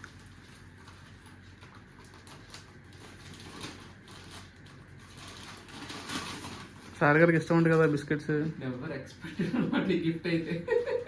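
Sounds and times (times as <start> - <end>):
packet rustling and clicking: 0.0 - 8.1.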